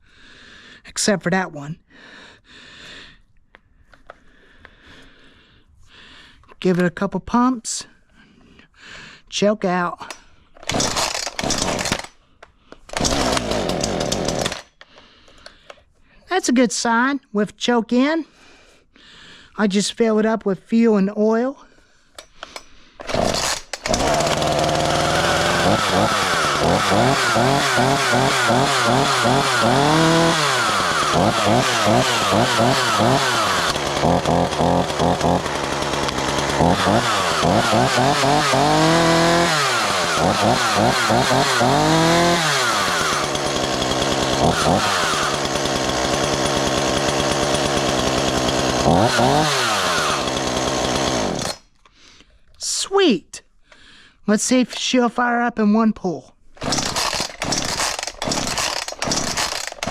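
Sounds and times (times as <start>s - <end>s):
chainsaw starting and revving: 10.0s - 12.2s, 12.8s - 15.6s, 22.2s - 51.8s, 56.6s - 59.9s.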